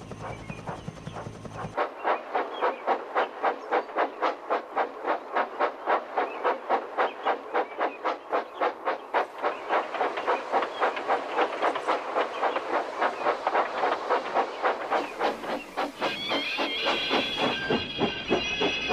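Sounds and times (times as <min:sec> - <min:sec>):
steam locomotive chuffing: 0:00.0 - 0:18.9
continuous steam hiss: 0:01.7 - 0:18.9.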